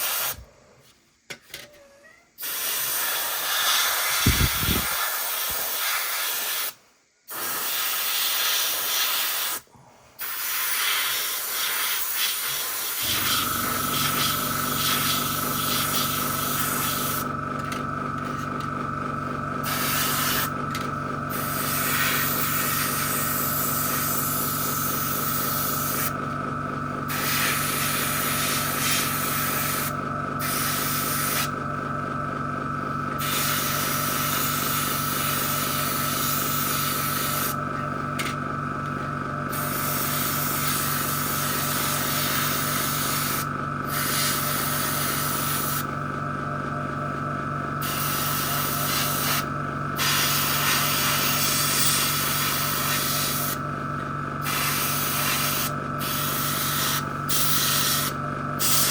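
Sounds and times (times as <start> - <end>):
airbrush spraying hiss: 0.0 - 0.4, 2.4 - 17.3, 19.6 - 20.5, 21.3 - 26.1, 27.1 - 31.5, 33.2 - 37.6, 39.5 - 45.9, 47.8 - 53.6, 54.4 - 58.9
compressor pulsing hum: 2.5 - 5.7, 9.4 - 58.9.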